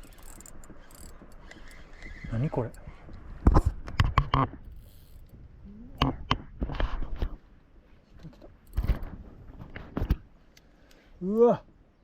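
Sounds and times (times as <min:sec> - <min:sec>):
fishing reel ratcheting: 0:00.0 - 0:02.3, 0:04.7 - 0:05.3.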